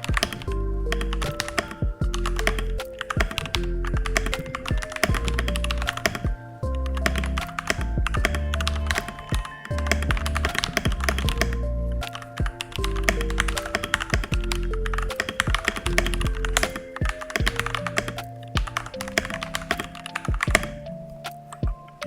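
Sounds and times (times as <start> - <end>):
background music with bass line: 0.0 - 16.7
fast typing on mechanical keyboard: 0.0 - 20.8.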